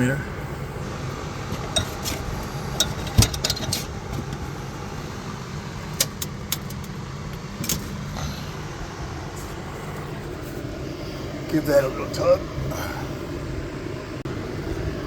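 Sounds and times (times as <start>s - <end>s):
steady low hum: 0.0s - 15.0s
metal tools clinking on steel: 1.5s - 4.4s.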